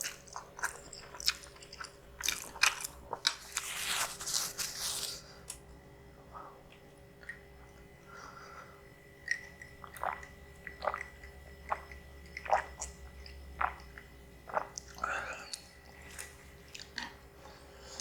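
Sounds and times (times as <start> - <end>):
wet chewing and lip smacks: 0.0 - 3.6.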